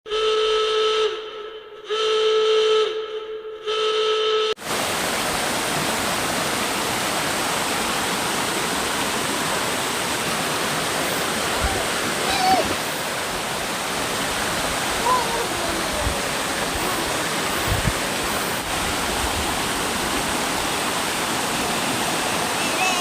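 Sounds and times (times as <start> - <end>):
stream water rushing: 4.6 - 23.0.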